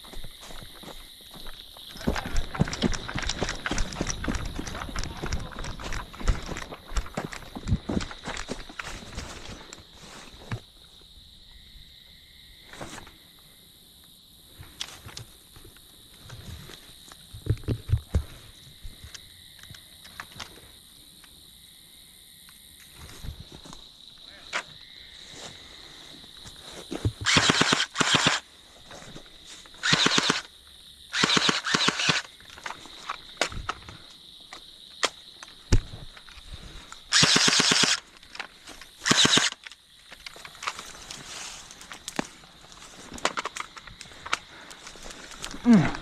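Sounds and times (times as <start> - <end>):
heavy footsteps on ground: 0.0 - 10.7
high insect trill: 0.0 - 46.0
airsoft gun full-auto bursts: 27.2 - 28.4, 29.8 - 30.5, 31.1 - 32.3, 37.1 - 38.0, 39.0 - 39.6.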